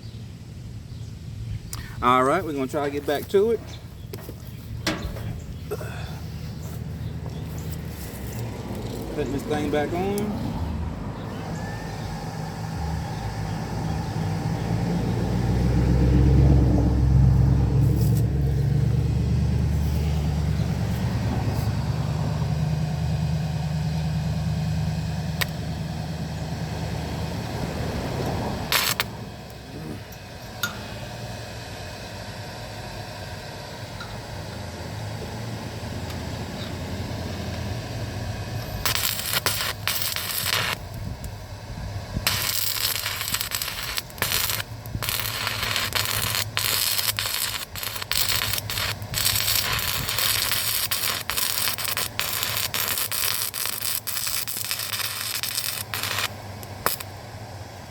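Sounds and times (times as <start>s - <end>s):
welding arc crackling: 2.0s - 10.4s, 27.4s - 30.9s, 38.5s - 57.2s.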